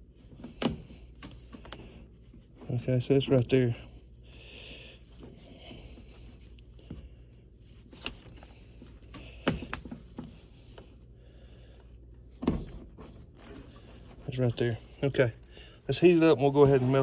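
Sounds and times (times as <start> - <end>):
hands scraping over carpet: 16.0 - 17.0.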